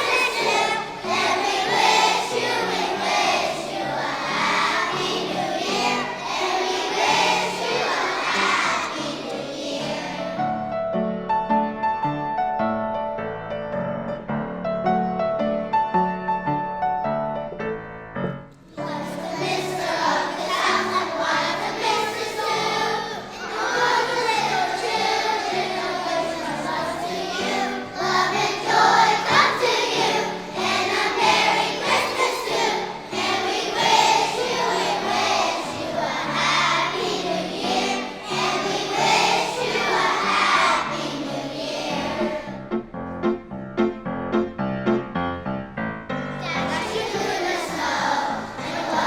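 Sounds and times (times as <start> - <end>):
children singing: 0.0 - 10.6, 18.7 - 42.6, 46.4 - 49.0
piano accompaniment: 0.0 - 49.0.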